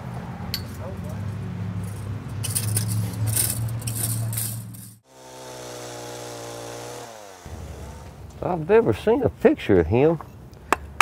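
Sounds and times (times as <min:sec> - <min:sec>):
high scraping and rattling: 0:01.8 - 0:05.1
chainsaw idling: 0:05.1 - 0:08.4.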